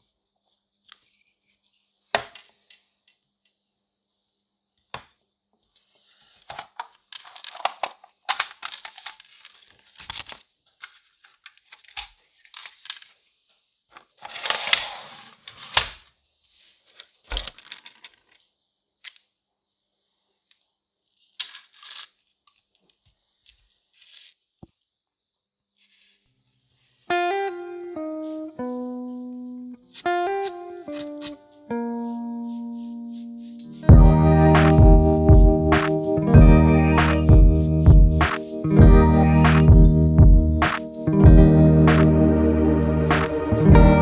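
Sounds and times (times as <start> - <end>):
tearing and crinkling: 6.0 - 13.2, 16.7 - 18.5, 21.1 - 22.9, 23.6 - 24.5
sharp knocks: 33.9 - 42.1.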